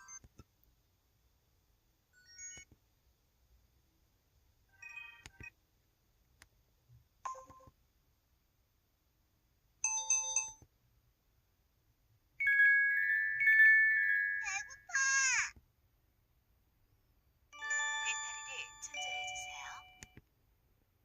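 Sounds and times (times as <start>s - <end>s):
phone alert chimes: 17.6s - 20.1s.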